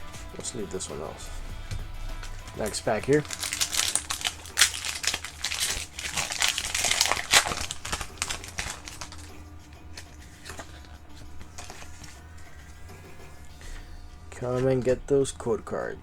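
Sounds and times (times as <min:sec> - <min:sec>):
foil wrapper crinkling: 0:02.2 - 0:12.4.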